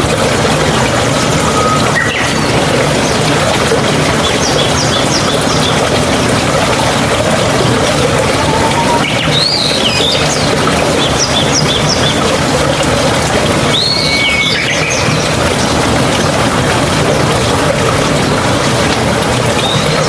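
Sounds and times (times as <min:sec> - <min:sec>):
flowing water: 0:00.0 - 0:20.0
whistled bird call: 0:01.5 - 0:02.5, 0:08.3 - 0:10.3, 0:13.7 - 0:15.1.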